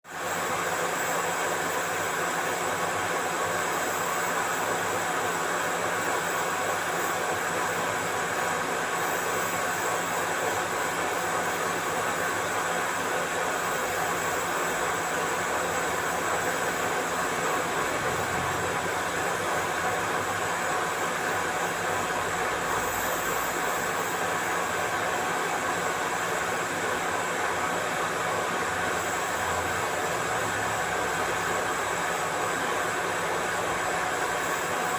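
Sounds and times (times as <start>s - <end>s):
machine with high whine: 0.0s - 34.9s
mechanical hum: 0.0s - 34.9s.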